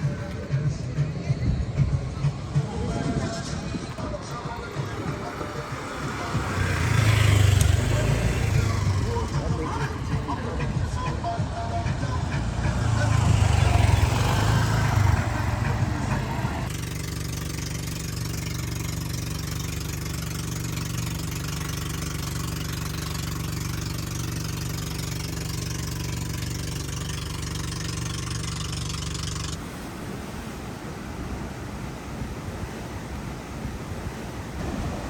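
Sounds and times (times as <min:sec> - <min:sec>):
engine idling hum: 0:00.0 - 0:35.0
engine running rough: 0:00.0 - 0:35.0.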